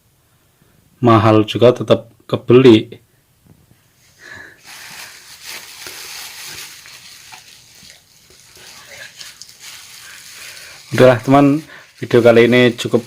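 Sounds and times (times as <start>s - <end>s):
packaging crinkling rustle: 4.5s - 13.0s.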